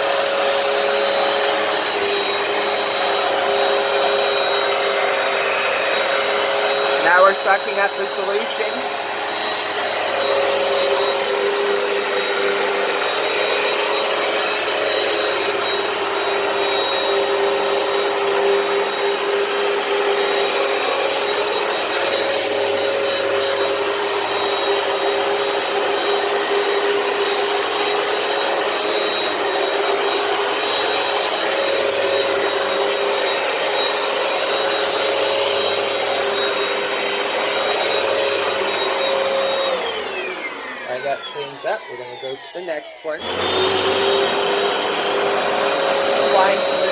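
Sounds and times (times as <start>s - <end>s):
carpet cleaner motor whine: 0.0s - 46.9s.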